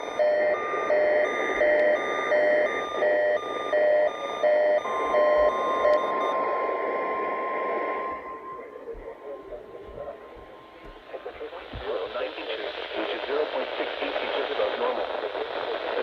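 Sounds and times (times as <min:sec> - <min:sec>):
steady warning alarm tone: 0:00.0 - 0:11.9
radio receiver static: 0:05.2 - 0:16.0.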